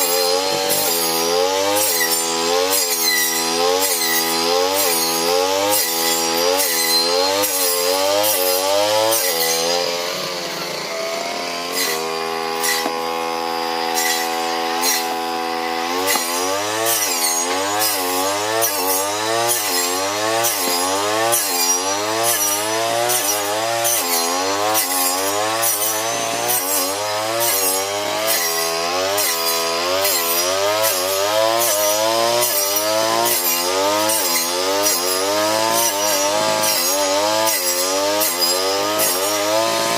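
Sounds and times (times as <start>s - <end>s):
brush cutter engine running: 0.0s - 39.9s.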